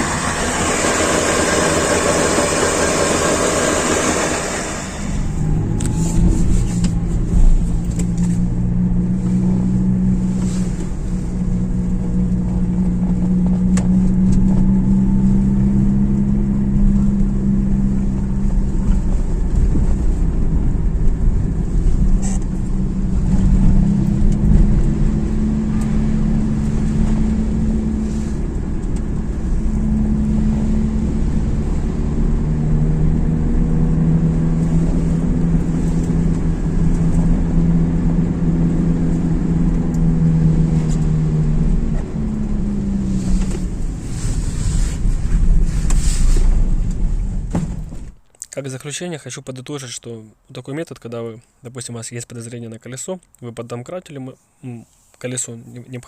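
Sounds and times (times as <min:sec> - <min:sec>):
car wheel bearing humming: 0:00.0 - 0:44.1.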